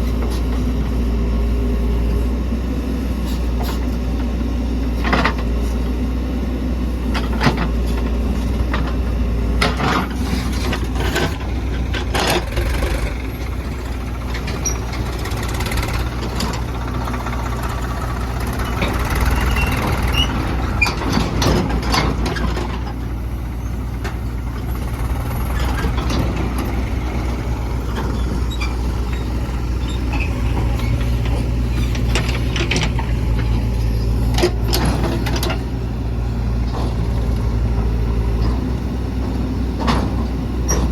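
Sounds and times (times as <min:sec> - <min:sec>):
diesel engine running: 0:00.0 - 0:40.9
clanks and knocks: 0:18.5 - 0:23.1, 0:27.9 - 0:33.6.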